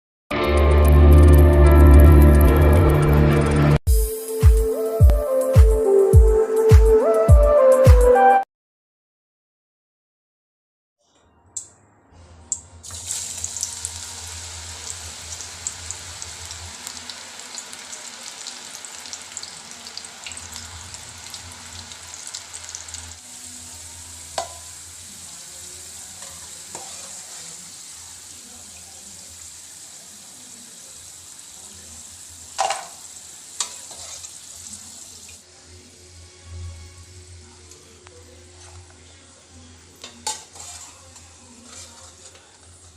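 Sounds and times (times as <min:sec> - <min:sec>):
food deep-frying in oil: 0:12.8 - 0:35.4.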